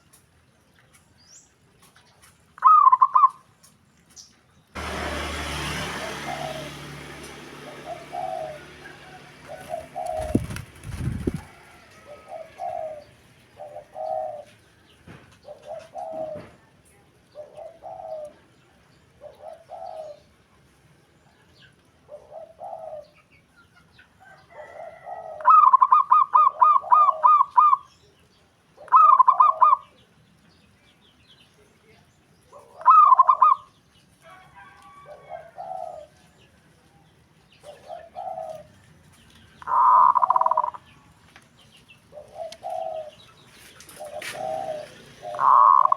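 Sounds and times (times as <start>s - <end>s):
doves cooing: 5.8s - 18.6s, 19.2s - 20.3s, 22.1s - 23.2s, 24.2s - 27.9s, 28.8s - 30.0s, 32.5s - 33.7s, 34.6s - 36.4s, 37.6s - 40.9s, 42.0s - 45.9s.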